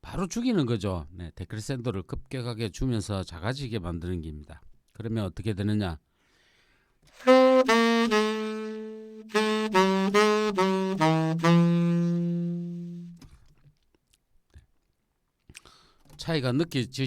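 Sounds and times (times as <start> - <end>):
tenor saxophone playing: 7.2 - 13.3.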